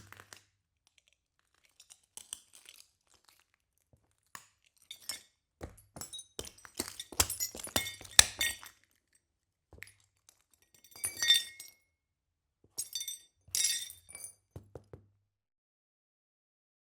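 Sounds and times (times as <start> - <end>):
broken glass crunching: 6.4 - 8.7.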